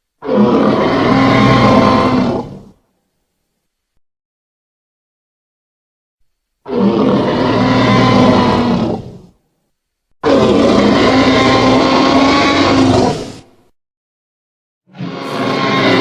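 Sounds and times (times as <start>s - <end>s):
dinosaur roaring: 0.2s - 2.8s, 6.7s - 9.4s, 10.2s - 13.5s, 14.9s - 16.0s.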